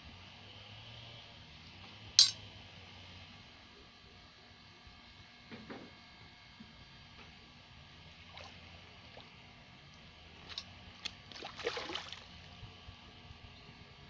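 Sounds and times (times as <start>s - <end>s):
water splashes and knocks: 10.5s - 12.3s.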